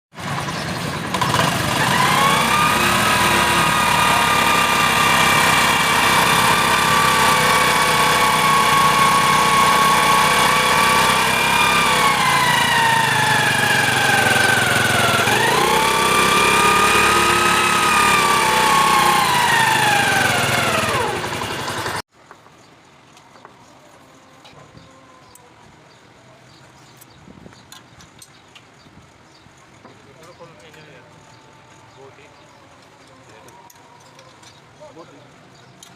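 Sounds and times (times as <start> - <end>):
loud clutch whine: 0.2 - 22.0
vehicle engine running: 0.2 - 22.0.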